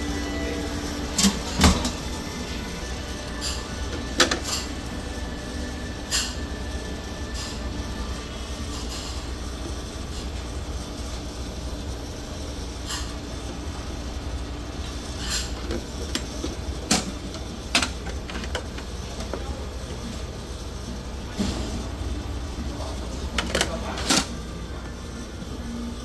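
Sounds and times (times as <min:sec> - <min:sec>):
restaurant ambience rumble: 0:00.0 - 0:26.0.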